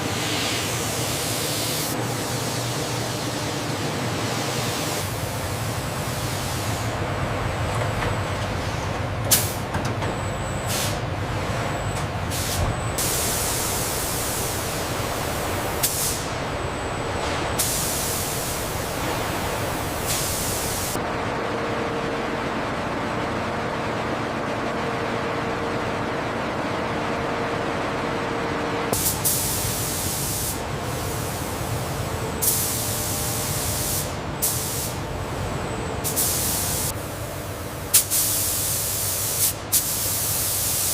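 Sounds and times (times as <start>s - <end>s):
factory machinery noise: 0.0s - 40.9s
hissing air bursts: 12.3s - 16.4s, 17.6s - 21.0s, 32.4s - 35.0s.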